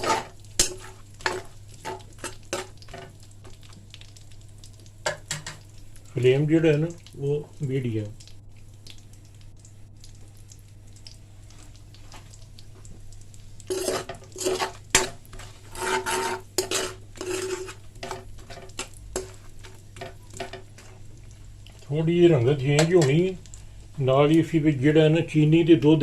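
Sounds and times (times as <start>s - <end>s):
metal spoon scraping a pan: 0.0s - 3.1s, 13.7s - 21.0s.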